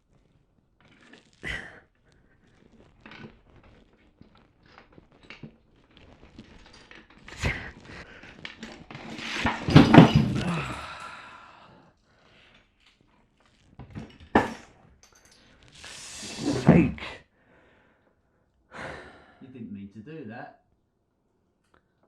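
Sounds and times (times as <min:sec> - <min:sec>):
clatter and rustling: 0:00.0 - 0:10.8, 0:12.3 - 0:16.8
plastic bricks knocking and clicking: 0:03.0 - 0:10.8.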